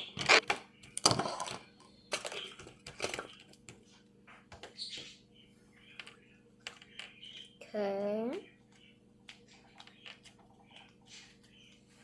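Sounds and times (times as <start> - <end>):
clicks and handling noises: 0.0 - 3.8.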